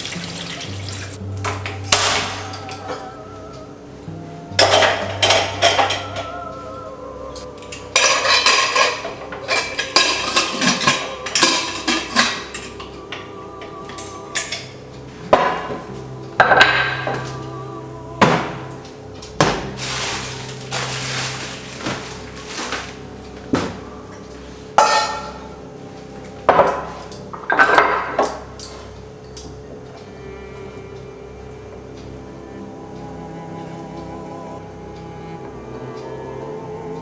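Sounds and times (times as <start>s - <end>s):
metal dishes clanking together: 1.4s - 3.1s, 4.6s - 6.4s, 7.4s - 17.4s, 24.8s - 25.5s, 26.5s - 29.6s.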